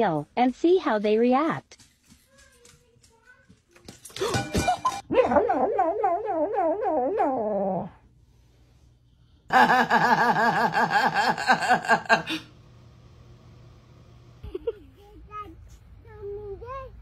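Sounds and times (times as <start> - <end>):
dog whining and howling: 5.1 - 8.0.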